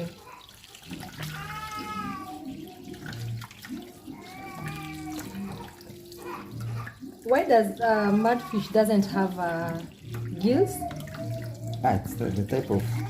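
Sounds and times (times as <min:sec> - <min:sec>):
tap water running into sink: 0:00.0 - 0:13.0.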